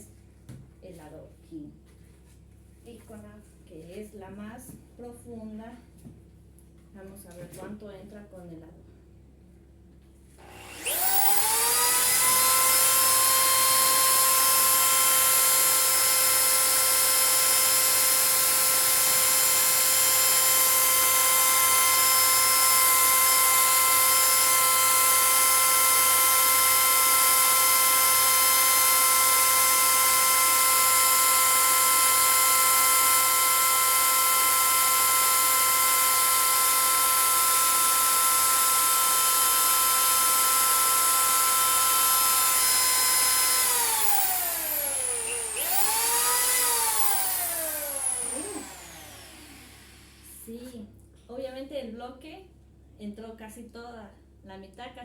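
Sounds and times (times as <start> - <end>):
electric drill boring into concrete: 10.4 - 50.5.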